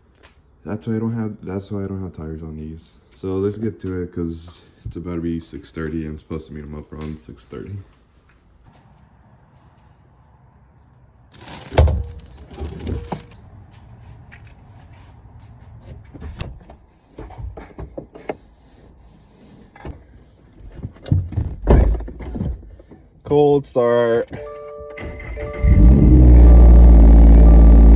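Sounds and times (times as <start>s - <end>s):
knocks clicks and rustles of handling: 11.3s - 13.4s, 15.7s - 19.0s, 19.6s - 23.2s.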